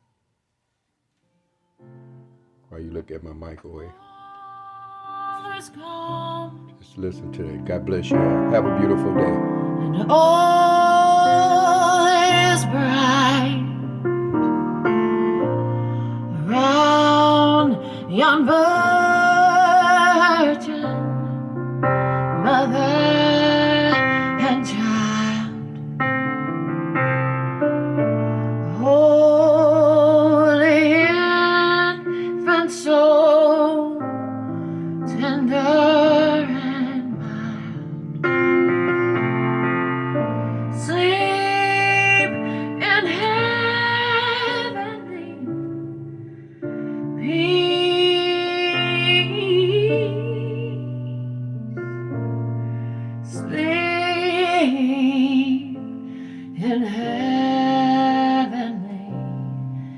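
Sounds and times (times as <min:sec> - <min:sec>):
woman singing with vibrato: 0:04.0 - 0:06.7, 0:09.7 - 0:14.0, 0:16.3 - 0:21.2, 0:22.4 - 0:25.8, 0:28.7 - 0:34.1, 0:35.1 - 0:38.0, 0:40.7 - 0:45.6, 0:47.2 - 0:51.2, 0:53.3 - 0:55.8, 0:56.6 - 0:59.3
piano accompaniment: 0:04.5 - 0:59.9
sustained keyboard chords: 0:06.8 - 0:15.8
person singing with vibrato: 0:09.2 - 0:14.1, 0:22.2 - 0:25.8, 0:35.1 - 0:38.1.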